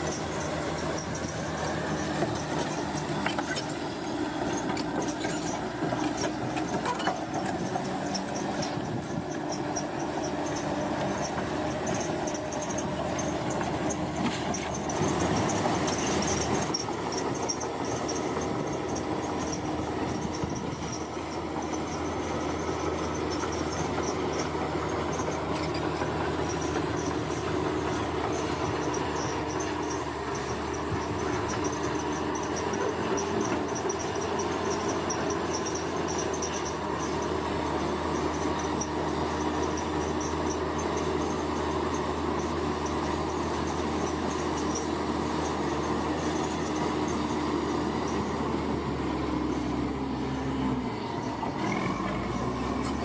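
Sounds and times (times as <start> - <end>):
rattling metallic track noise: 0.0 - 37.3
bulldozer diesel engine: 0.0 - 53.0
insect chirring: 28.4 - 37.2.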